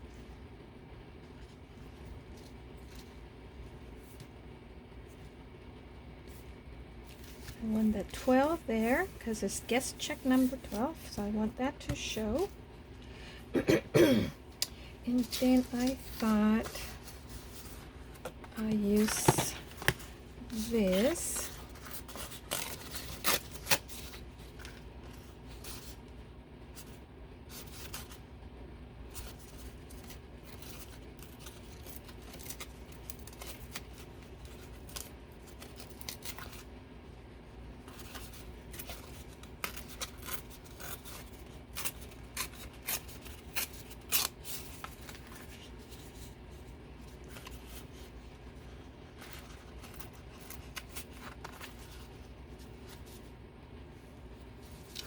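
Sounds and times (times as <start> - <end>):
faint low hum: 0.0 - 55.0
paper being handled: 6.2 - 12.6, 15.1 - 26.1, 29.1 - 36.8, 37.4 - 53.4
scissors snipping paper: 29.2 - 36.7, 37.9 - 45.4.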